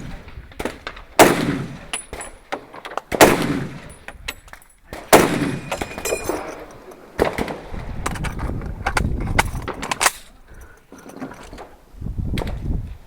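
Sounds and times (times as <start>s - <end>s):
gunshots: 0.0s - 2.2s, 3.1s - 4.0s, 4.9s - 6.4s, 7.2s - 7.7s.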